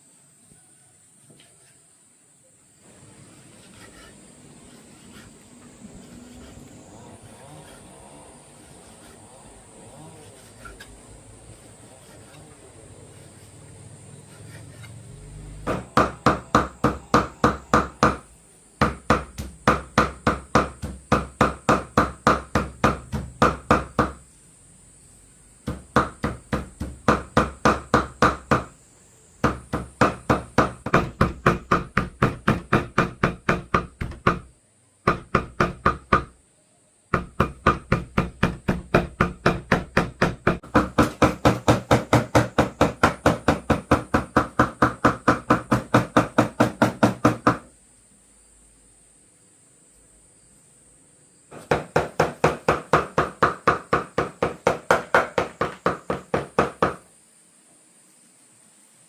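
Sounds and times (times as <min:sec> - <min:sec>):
cleaver chopping on wooden board: 0:18.8 - 0:24.2, 0:25.6 - 0:28.7, 0:29.4 - 0:34.5, 0:37.2 - 0:47.6, 0:51.5 - 0:57.0.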